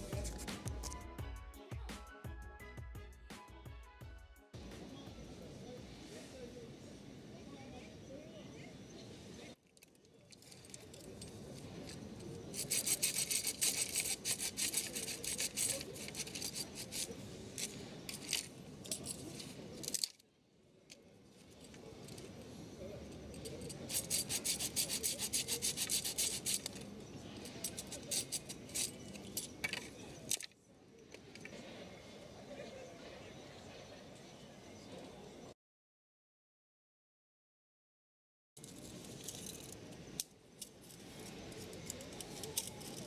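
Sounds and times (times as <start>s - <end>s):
hand saw cutting wood: 12.6s - 17.0s, 23.9s - 26.7s.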